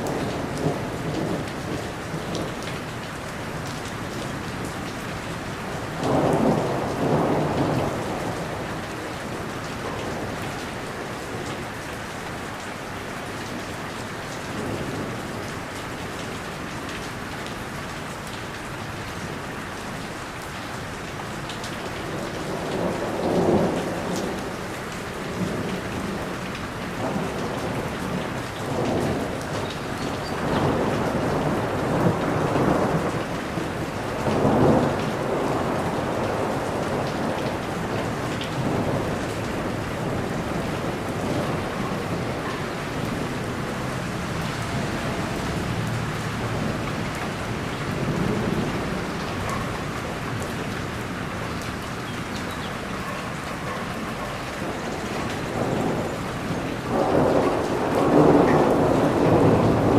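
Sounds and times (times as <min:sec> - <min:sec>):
rain falling on a surface: 0:00.0 - 0:59.9
thunder rumbling: 0:26.9 - 0:59.9.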